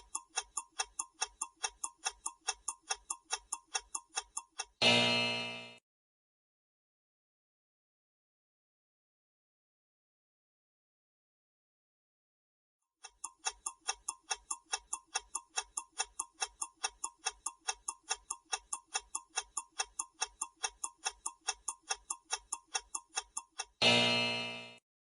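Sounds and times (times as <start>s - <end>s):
clock ticking: 0.0s - 5.8s, 13.0s - 24.8s
loud buzzer tone: 4.8s - 5.8s, 23.8s - 24.8s.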